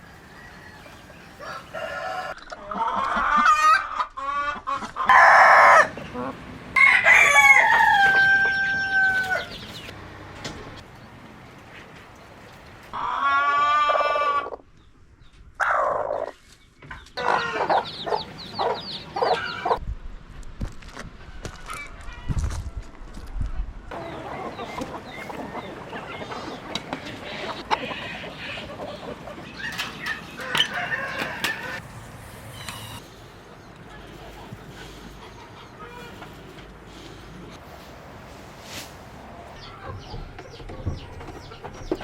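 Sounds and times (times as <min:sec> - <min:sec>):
rooster crowing: 0:00.0 - 0:02.4, 0:05.1 - 0:05.9, 0:06.8 - 0:09.7, 0:30.2 - 0:31.9
chickens clucking: 0:00.0 - 0:14.6, 0:15.2 - 0:19.8, 0:23.9 - 0:31.9, 0:32.5 - 0:42.0.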